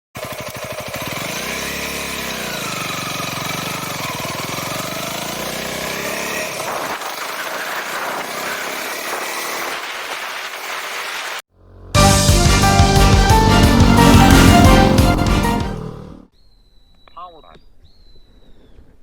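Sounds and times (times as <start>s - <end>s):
motorcycle engine running: 0.2s - 9.6s, 11.5s - 16.3s.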